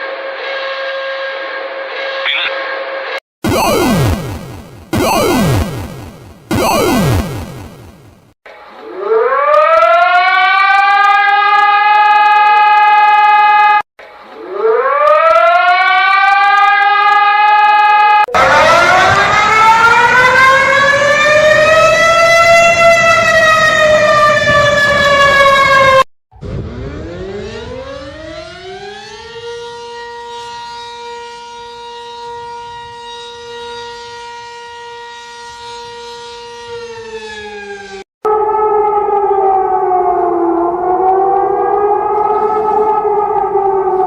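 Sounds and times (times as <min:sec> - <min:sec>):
siren rising and falling wail: 0:03.4 - 0:08.3, 0:08.9 - 0:13.8, 0:14.5 - 0:44.0
siren winding up and wailing: 0:03.4 - 0:08.3.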